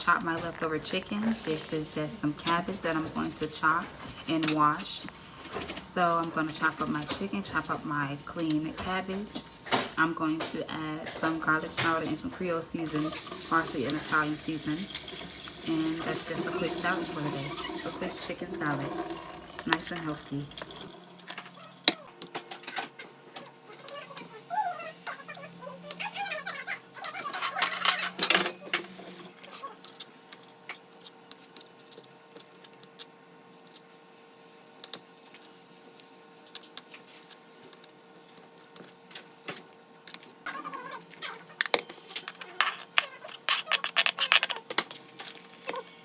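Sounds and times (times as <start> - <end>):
kitchen clicks taps and rustles: 0.0 - 18.8.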